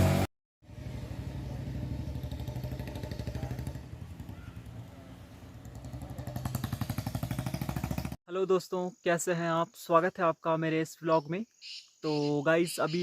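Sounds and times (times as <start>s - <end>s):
motorcycle engine running: 0.0s - 8.2s.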